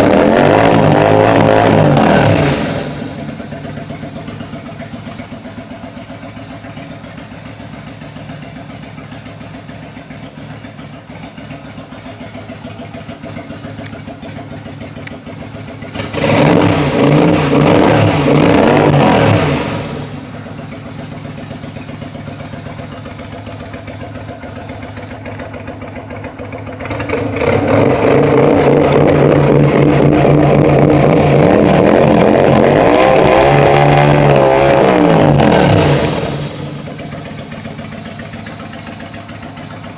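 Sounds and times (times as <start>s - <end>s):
motorcycle idling and revving: 0.0s - 39.9s.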